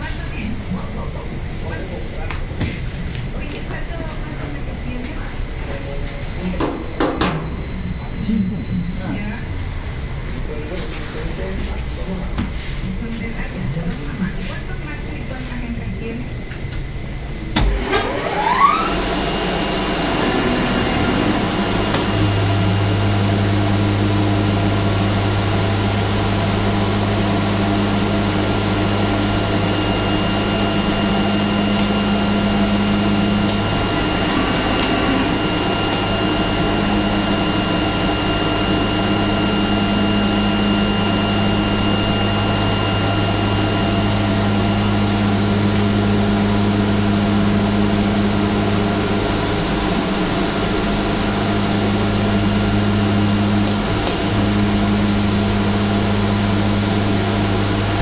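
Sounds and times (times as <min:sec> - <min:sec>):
cutting machine humming: 0:16.4 - 0:58.0.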